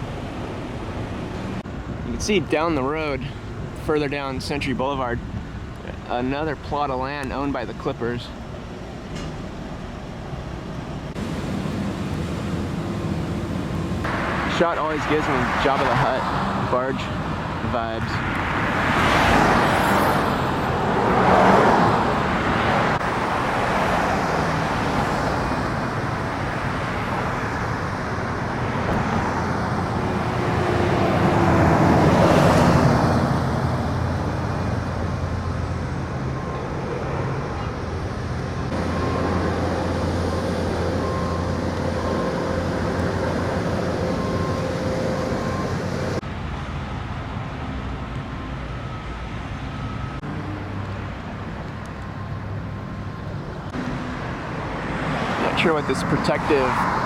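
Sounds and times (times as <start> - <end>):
road traffic passing: 0.0 - 57.0
vehicle passing by: 11.1 - 46.2, 53.6 - 57.0.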